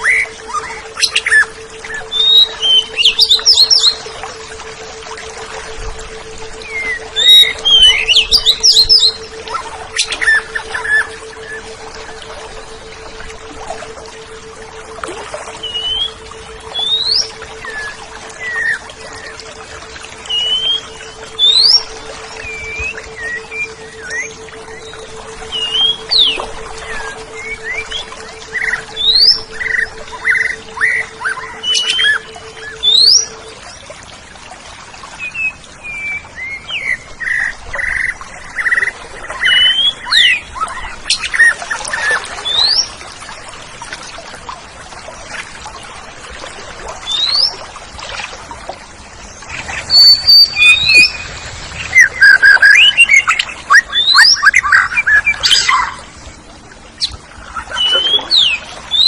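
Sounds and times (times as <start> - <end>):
songbird singing whistles: 0.0 - 4.2, 6.2 - 13.1, 15.6 - 19.6, 20.2 - 33.4, 35.2 - 42.9, 47.0 - 47.6, 49.5 - 56.1, 57.0 - 59.0.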